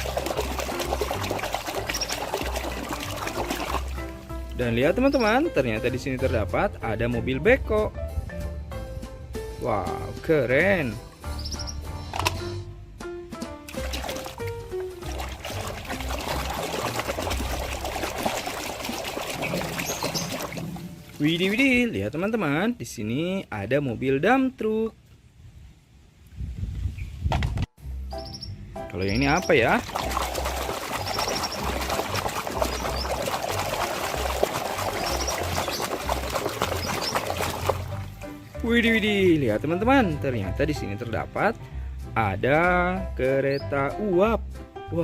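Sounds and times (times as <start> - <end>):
water splashing and trickling: 0.0 - 6.7, 13.6 - 22.6, 29.0 - 41.0
background music beat: 0.0 - 18.2.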